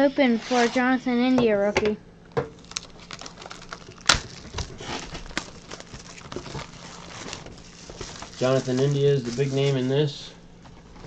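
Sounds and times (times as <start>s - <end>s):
card packaging crinkling: 2.5s - 10.2s.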